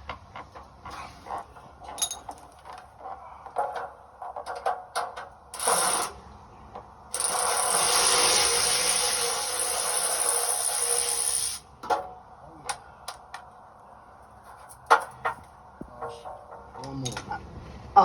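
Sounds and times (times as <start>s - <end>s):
ratchet buzzing: 5.5s - 6.1s, 7.1s - 11.6s.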